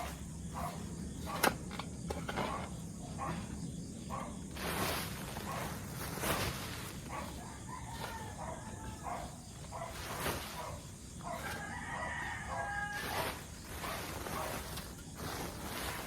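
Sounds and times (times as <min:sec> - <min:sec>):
shovel scraping manure: 0:00.0 - 0:16.0.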